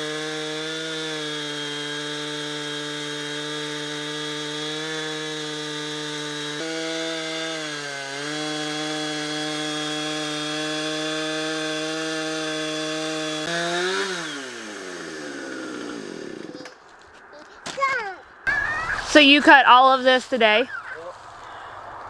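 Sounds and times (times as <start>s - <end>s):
chainsaw cutting log: 0.0s - 16.8s.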